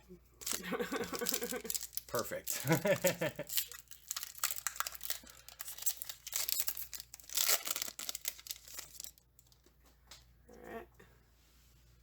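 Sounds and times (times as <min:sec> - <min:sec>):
foil wrapper tearing and crinkling: 0:00.4 - 0:09.6.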